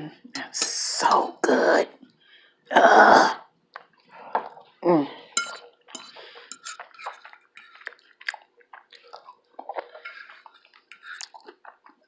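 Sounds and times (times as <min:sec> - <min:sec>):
close chewing with lip smacks: 0:06.4 - 0:12.0.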